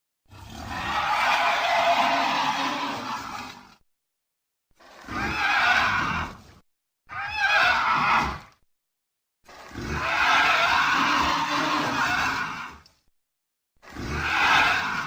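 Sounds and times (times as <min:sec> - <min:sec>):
screeching creature roar: 0:00.3 - 0:03.7, 0:04.8 - 0:06.5, 0:07.1 - 0:08.6, 0:09.6 - 0:12.8, 0:13.8 - 0:15.0.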